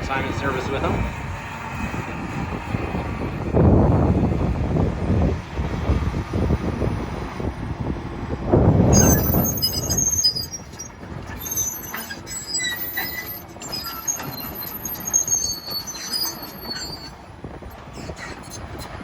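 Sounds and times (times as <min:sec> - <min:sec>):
low engine rumble: 0:00.0 - 0:19.0
metal tracks squealing and clanking: 0:08.8 - 0:19.0.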